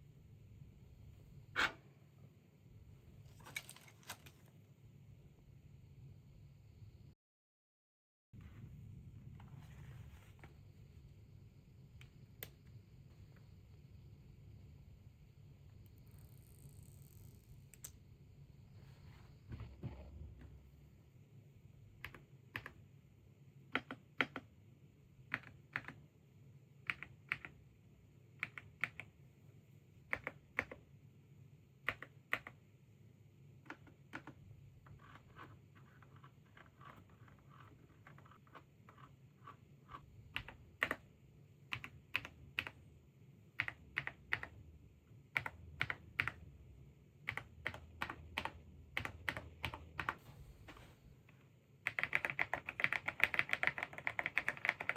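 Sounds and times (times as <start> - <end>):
mechanical keyboard typing: 30.1 - 30.8, 39.9 - 41.0, 41.7 - 42.8, 43.6 - 44.6, 45.4 - 46.4, 47.3 - 50.2, 51.8 - 54.9.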